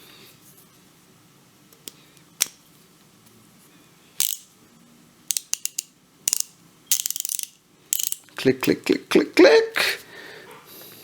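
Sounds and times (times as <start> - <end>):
hand ratchet clicking: 4.2 - 4.5, 5.3 - 8.3.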